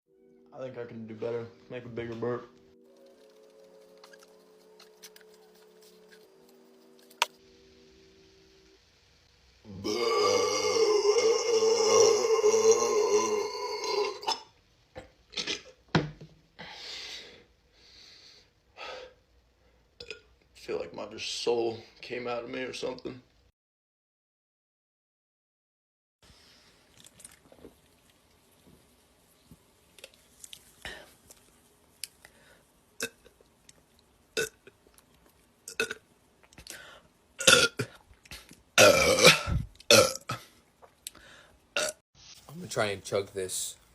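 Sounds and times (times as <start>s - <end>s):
man burping: 9.7s - 15.8s, 35.7s - 36.0s, 37.4s - 38.0s, 38.8s - 40.5s, 41.8s - 42.0s
heavy breathing: 41.1s - 41.6s.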